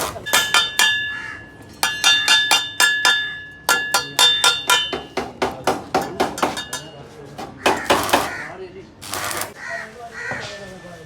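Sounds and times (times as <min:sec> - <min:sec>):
hammer striking metal muffler: 0:00.0 - 0:08.4.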